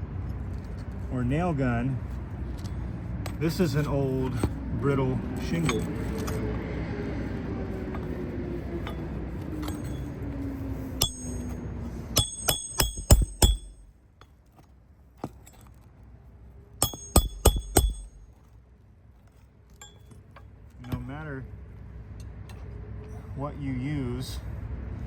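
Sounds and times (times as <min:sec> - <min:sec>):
hammer striking nail: 0:11.0 - 0:11.5, 0:12.2 - 0:13.9, 0:16.8 - 0:18.3.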